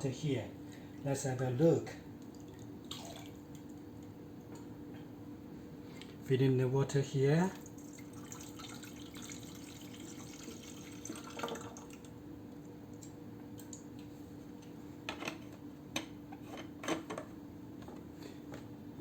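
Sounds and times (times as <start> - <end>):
water trickling into tank: 2.2 - 3.8, 7.6 - 12.2.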